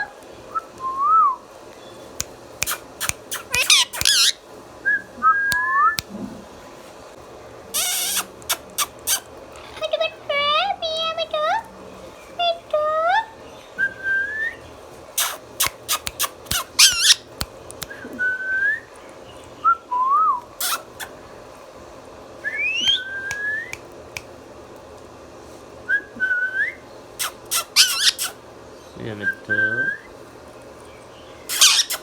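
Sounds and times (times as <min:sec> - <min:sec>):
parrot calling: 0:02.6 - 0:04.4, 0:07.7 - 0:09.4, 0:15.2 - 0:17.4, 0:20.5 - 0:21.2, 0:27.2 - 0:28.4, 0:31.4 - 0:32.0.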